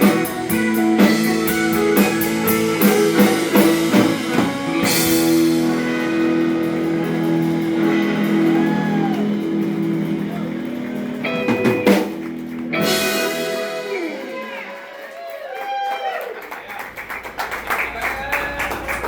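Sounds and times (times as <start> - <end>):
lead guitar bending notes: 0.0 - 15.0
rock band holding a chord: 0.0 - 15.2.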